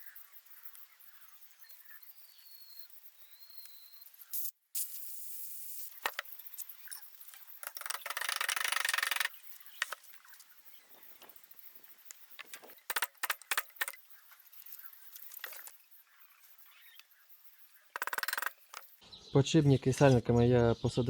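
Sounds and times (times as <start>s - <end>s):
engine parts clicking and knocking: 18.0s - 19.0s.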